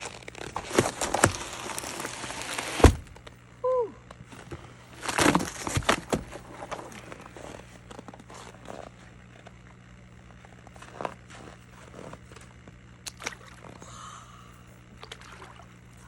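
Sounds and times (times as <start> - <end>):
crunching on frozen snow: 0.0 - 3.2, 4.3 - 9.6, 10.2 - 12.6.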